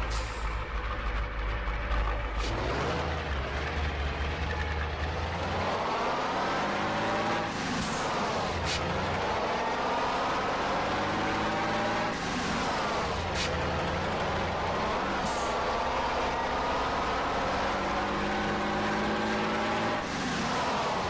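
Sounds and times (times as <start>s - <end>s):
vehicle engine running: 0.0s - 21.0s.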